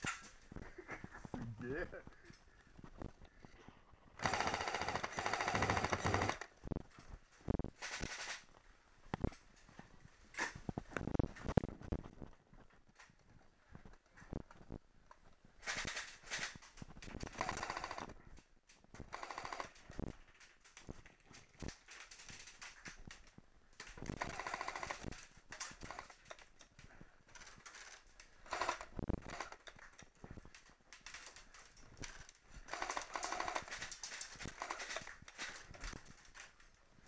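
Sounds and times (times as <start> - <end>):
airsoft gun firing bursts: 4.2 - 6.5, 24.2 - 25.1, 28.5 - 29.6, 32.7 - 33.8.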